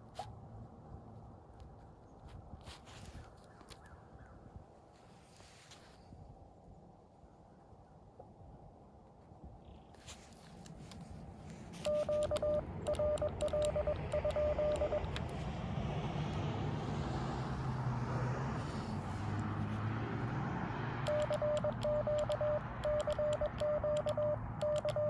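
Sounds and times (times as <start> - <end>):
morse code beeps: 11.8 - 15.2, 21.1 - 25.0.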